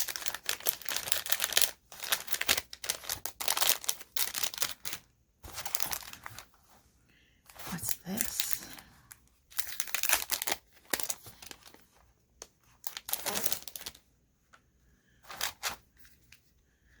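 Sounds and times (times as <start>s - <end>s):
paper packaging crinkling: 0.0s - 6.8s, 7.5s - 14.1s, 15.2s - 16.5s.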